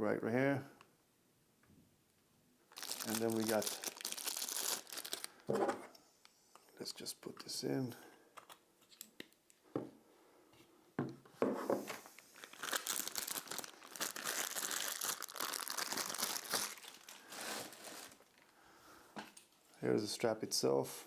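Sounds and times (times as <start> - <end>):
plastic packaging crinkling: 2.7 - 5.5, 12.2 - 18.5.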